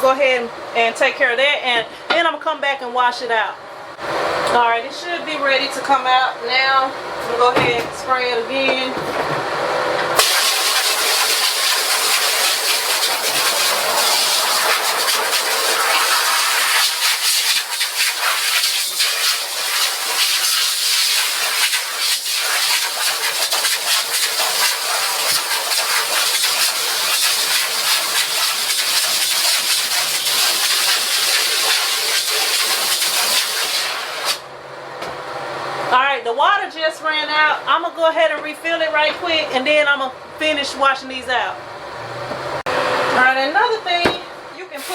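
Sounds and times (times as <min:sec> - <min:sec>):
pressure washer spraying water: 0:10.2 - 0:34.4.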